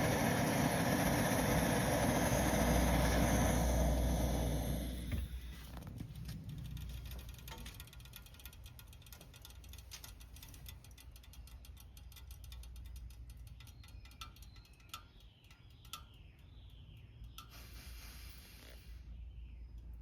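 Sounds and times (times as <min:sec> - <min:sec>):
gasoline stove burning: 0:00.0 - 0:15.6.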